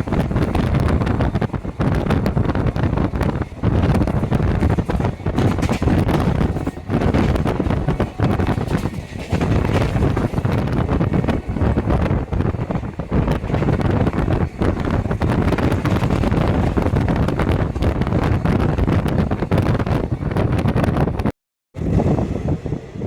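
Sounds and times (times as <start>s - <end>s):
wheels clattering on track: 0.0s - 21.2s
train rumble: 0.0s - 23.0s
wind buffeting microphone: 0.0s - 23.0s.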